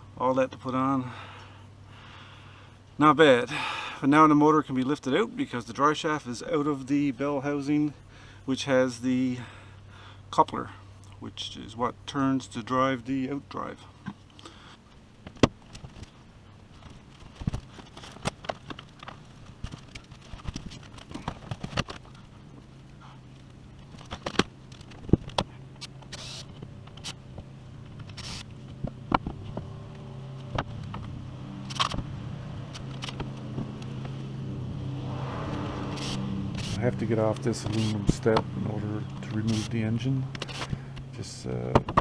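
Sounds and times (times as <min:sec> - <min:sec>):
low motor hum: 0:26.6 - 0:42.0
sharp clicks and knocks: 0:36.0 - 0:42.0.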